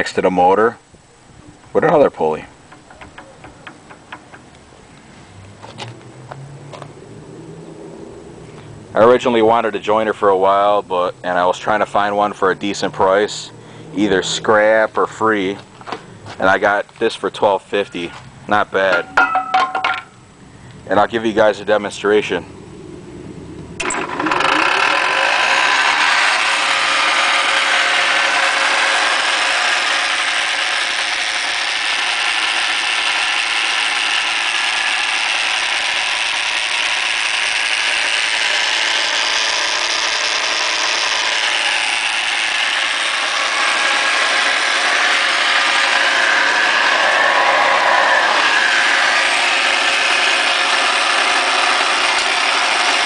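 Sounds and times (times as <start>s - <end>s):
jointer planer running: 1.5s - 4.8s, 23.8s - 53.0s.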